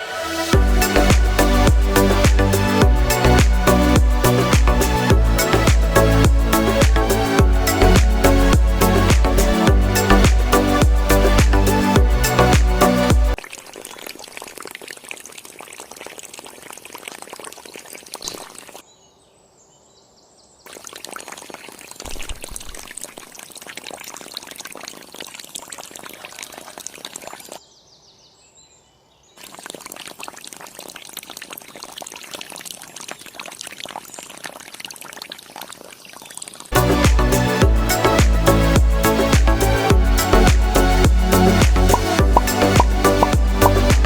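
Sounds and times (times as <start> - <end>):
water pouring and splashing: 0.0 - 18.8, 20.6 - 27.6, 29.4 - 44.0.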